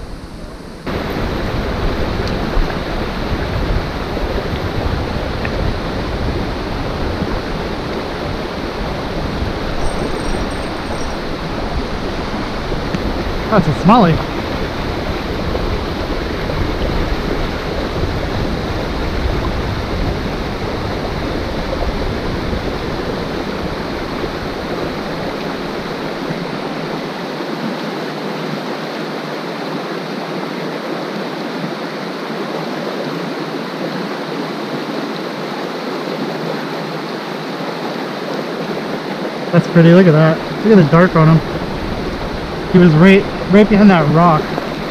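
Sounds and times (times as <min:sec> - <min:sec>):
creek water rushing: 0:00.0 - 0:44.9.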